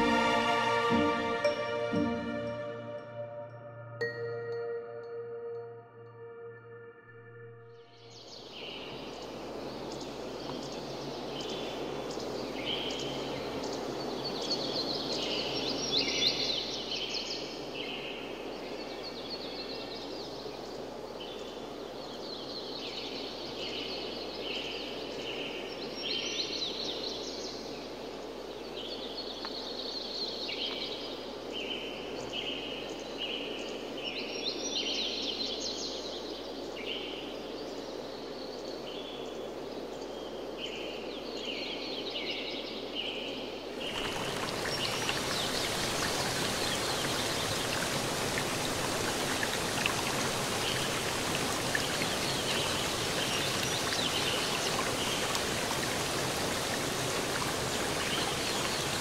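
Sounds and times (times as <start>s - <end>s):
waterfall rushing: 0.0s - 3.1s, 43.8s - 59.0s
songbirds singing: 8.0s - 59.0s.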